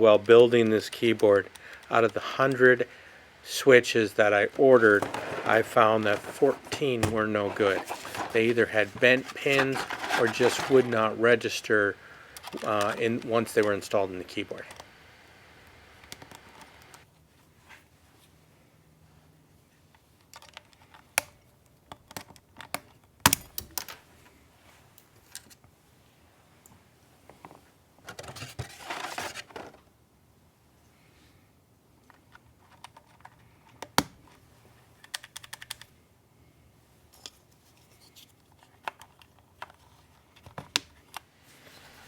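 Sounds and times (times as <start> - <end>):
brief rustling: 4.5 - 13.8.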